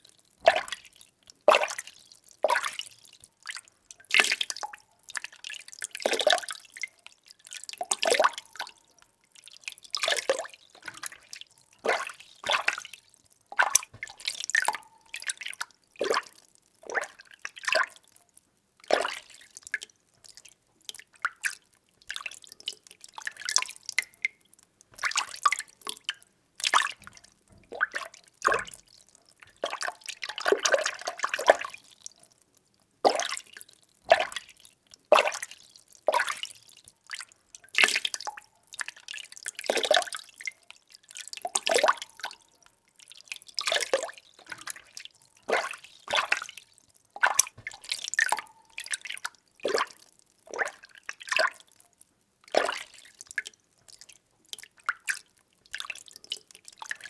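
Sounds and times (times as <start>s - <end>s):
water swishing and splashing: 10.0s - 13.0s, 43.7s - 50.0s.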